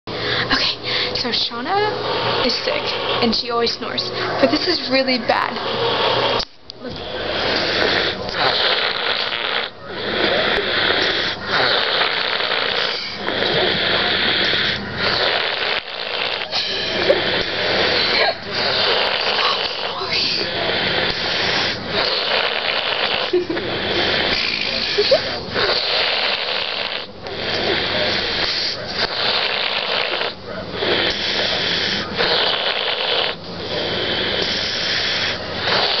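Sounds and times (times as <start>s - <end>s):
heavy snoring: 5.4s - 36.0s.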